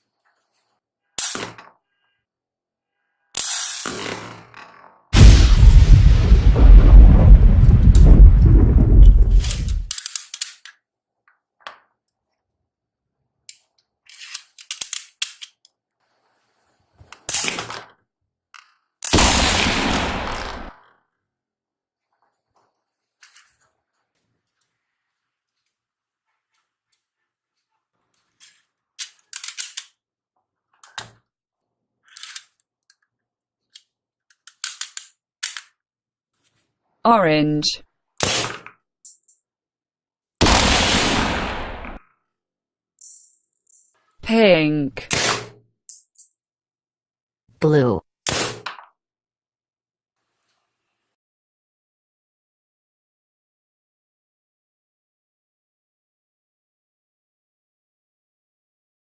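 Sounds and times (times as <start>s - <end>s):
loud deep blast: 5.2s - 9.9s
toy gun cracks and clicks: 9.9s - 10.8s, 13.5s - 15.7s, 29.0s - 30.0s, 33.8s - 35.8s.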